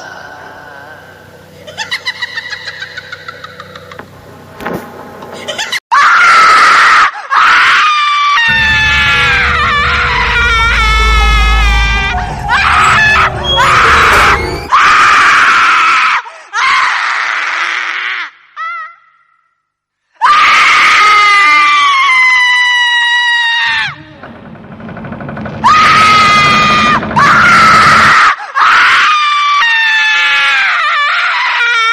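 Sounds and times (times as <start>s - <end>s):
wail falling in pitch: 8.4s - 15.2s
deep low rumble: 8.5s - 14.7s
high-pitched screams: 8.5s - 15.7s.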